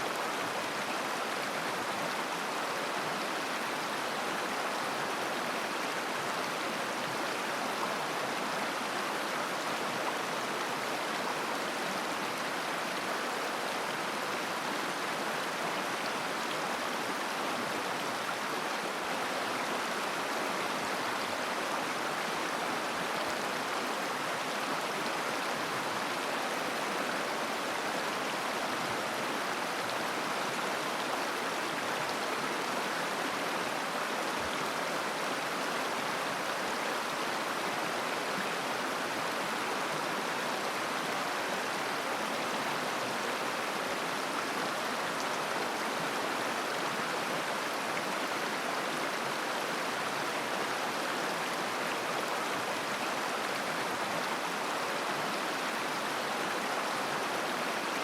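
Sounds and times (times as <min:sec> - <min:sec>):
river flowing over stones: 0:00.0 - 0:58.0.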